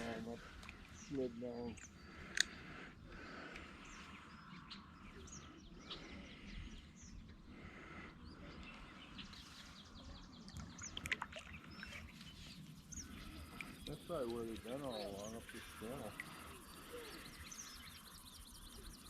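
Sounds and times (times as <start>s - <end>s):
faint bird chirps: 0.0s - 19.0s
sharp clicks: 1.8s - 2.7s.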